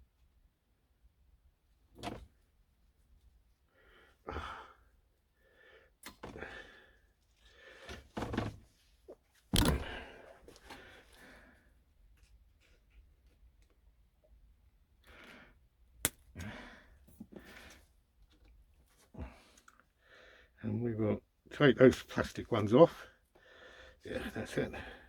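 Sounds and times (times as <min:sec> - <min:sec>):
handling scuffs: 0:09.6 - 0:10.7.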